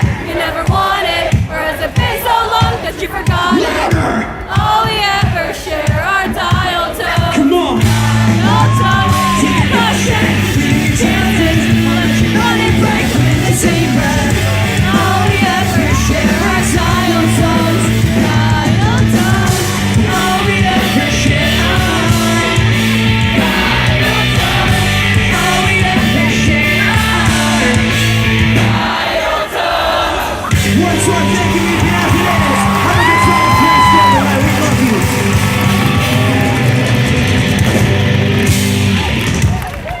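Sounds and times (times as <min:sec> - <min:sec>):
person singing: 0:00.0 - 0:28.2
drums: 0:00.0 - 0:40.0
pop-punk band playing: 0:00.0 - 0:40.0
electric guitars: 0:07.7 - 0:28.9, 0:30.4 - 0:40.0
bass guitar: 0:07.7 - 0:29.0, 0:30.5 - 0:40.0.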